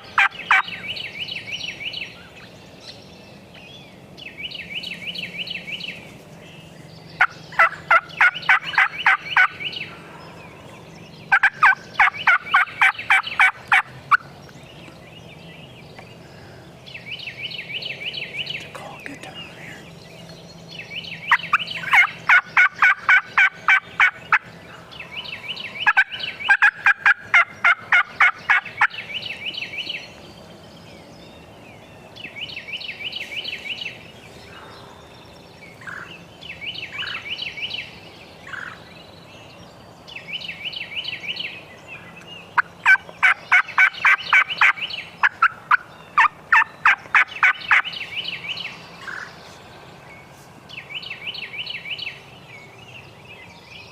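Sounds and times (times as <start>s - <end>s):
turkey gobbling: 0.2s - 0.7s, 7.2s - 9.6s, 11.3s - 14.2s, 21.3s - 24.4s, 25.8s - 29.0s, 42.6s - 47.9s.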